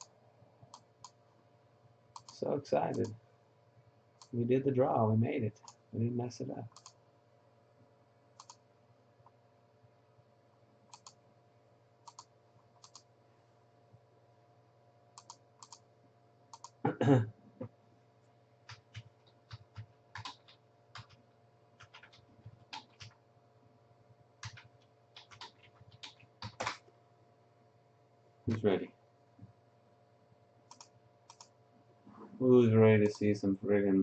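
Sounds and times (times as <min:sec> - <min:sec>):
faint electrical hum: 0:00.0 - 0:34.0.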